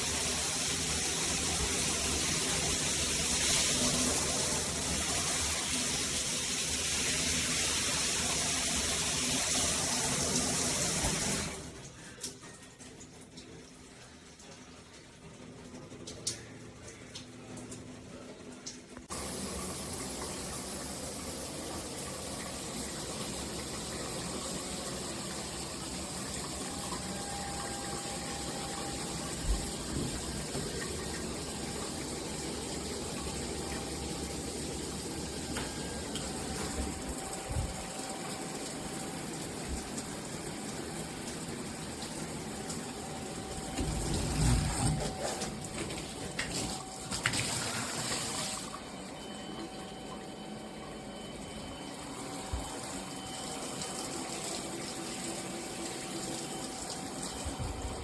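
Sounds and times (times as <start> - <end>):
water spraying from shower head: 42.7 - 48.5.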